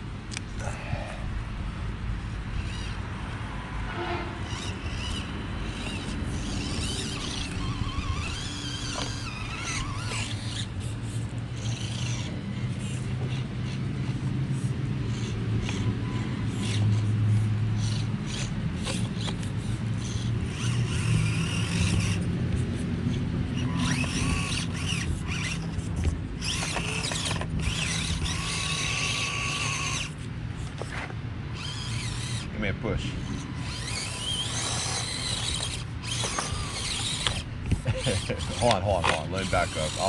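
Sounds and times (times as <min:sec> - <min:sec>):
small electric motors whirring: 0:00.0 - 0:40.0
tyres clicking against stone: 0:18.3 - 0:32.4, 0:33.6 - 0:40.0.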